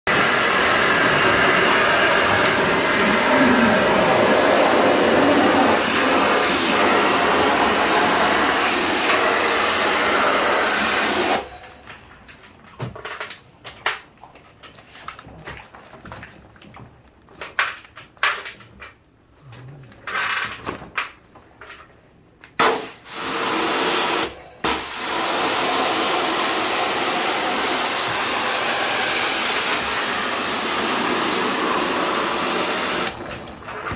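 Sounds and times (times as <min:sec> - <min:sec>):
high-pressure spray jet hissing: 0:00.1 - 0:11.5, 0:22.6 - 0:33.2.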